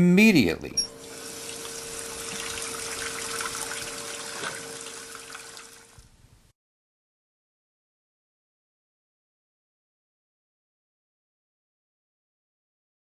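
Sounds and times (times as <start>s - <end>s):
water running from a tap: 0.9s - 6.1s.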